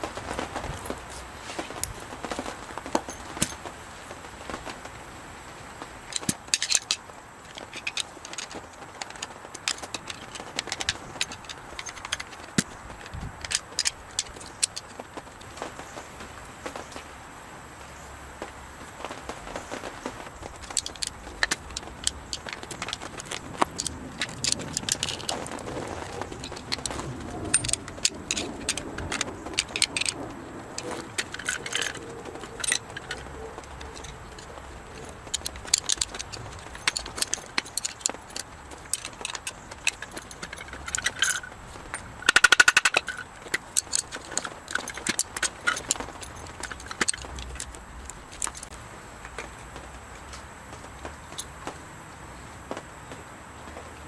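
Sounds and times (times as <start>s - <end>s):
metal tools clinking: 0.5s - 3.7s, 6.1s - 15.5s, 20.4s - 48.7s
rapid rattle of clicks: 6.0s - 15.9s, 18.9s - 49.5s.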